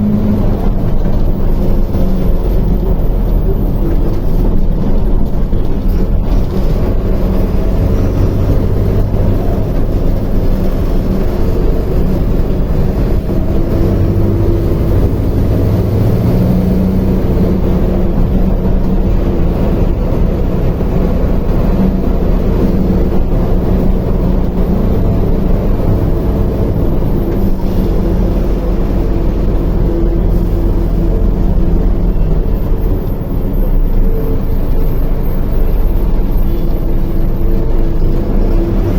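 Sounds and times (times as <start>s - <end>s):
bus diesel engine running: 0.0s - 38.9s.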